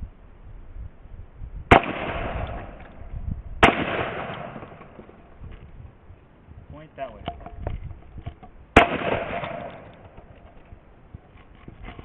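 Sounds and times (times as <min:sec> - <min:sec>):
shotgun shots with echo: 0:01.7 - 0:03.0, 0:03.6 - 0:05.0, 0:08.8 - 0:10.1.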